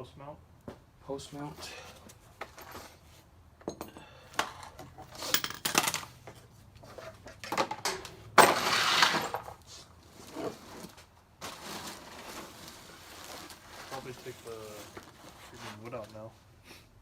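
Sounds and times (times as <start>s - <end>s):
metal tools clinking: 3.6s - 6.5s.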